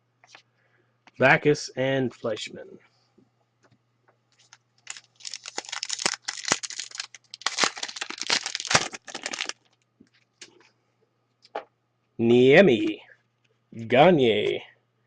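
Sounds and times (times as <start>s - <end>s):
card pack wrapper tearing: 4.4s - 9.8s.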